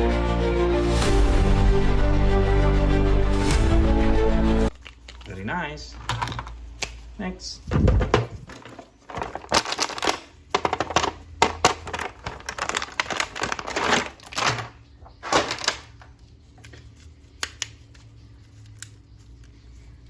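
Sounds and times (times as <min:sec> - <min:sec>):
plastic packaging crinkling: 0:04.7 - 0:19.8.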